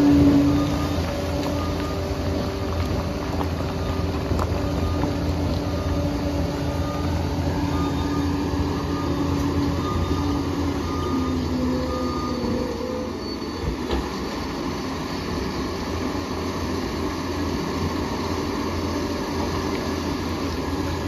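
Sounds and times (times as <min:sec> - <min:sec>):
whining tones: 0:00.0 - 0:14.4
bulldozer diesel engine drone: 0:00.0 - 0:21.0.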